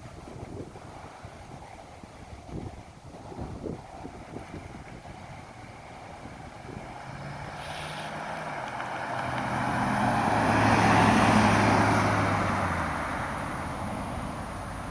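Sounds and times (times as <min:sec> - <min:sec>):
vehicle passing by: 0:04.2 - 0:14.9.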